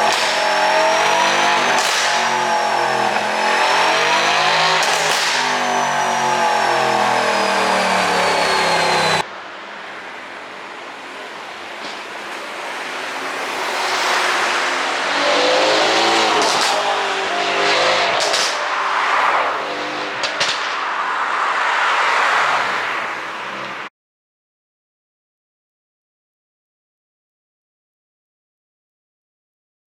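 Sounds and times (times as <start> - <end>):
car engine revving: 0.0 - 11.2, 12.0 - 23.9
sharp exhaust pops: 18.2 - 18.6.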